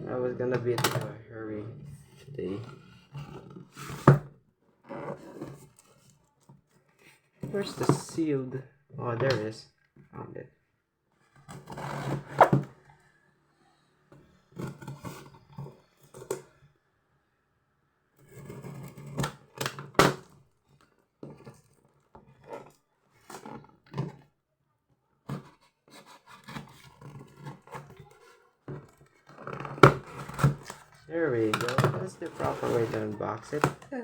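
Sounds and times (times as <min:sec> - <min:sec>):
packaging rustling and scraping: 0:05.0 - 0:08.1, 0:25.3 - 0:34.0.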